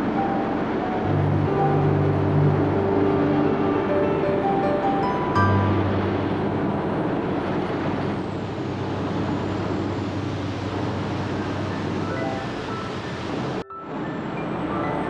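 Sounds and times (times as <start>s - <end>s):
low hum: 0.0s - 12.0s
boat engine rushing: 0.0s - 15.0s.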